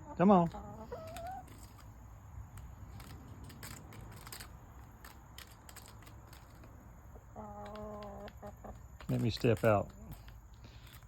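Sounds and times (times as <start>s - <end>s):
chickens pecking and scratching: 0.1s - 11.0s.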